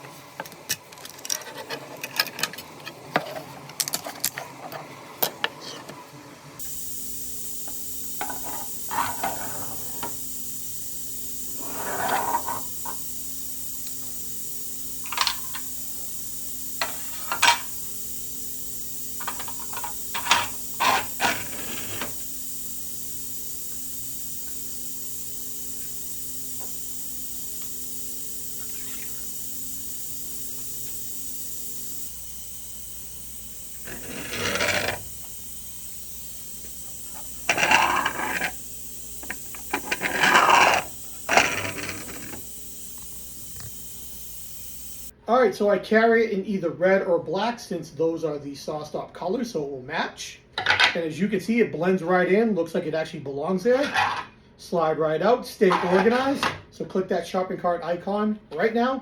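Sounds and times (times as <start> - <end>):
steady low hum: 6.6 - 45.1.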